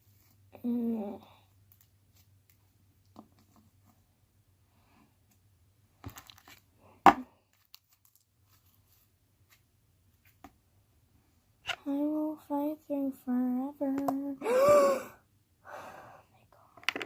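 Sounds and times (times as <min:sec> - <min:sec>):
plastic container crinkling: 0:06.1 - 0:06.7, 0:07.5 - 0:08.8.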